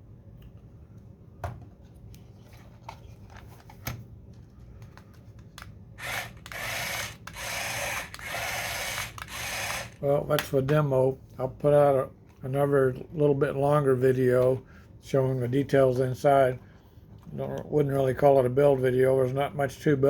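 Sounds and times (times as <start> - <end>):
small gear motors whirring: 6.0 - 10.0.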